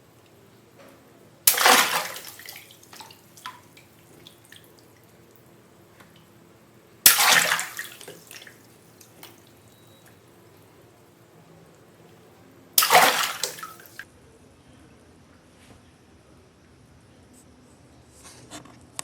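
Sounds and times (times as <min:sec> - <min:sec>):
water balloon popping: 0:01.5 - 0:03.7, 0:07.1 - 0:08.6, 0:12.8 - 0:14.0
water splashing and pattering: 0:01.5 - 0:06.3, 0:07.1 - 0:09.6, 0:12.8 - 0:14.0.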